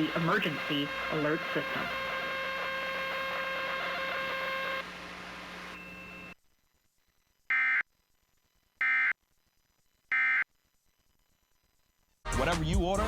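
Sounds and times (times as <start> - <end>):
electrical hum and hiss: 0.0 - 10.0.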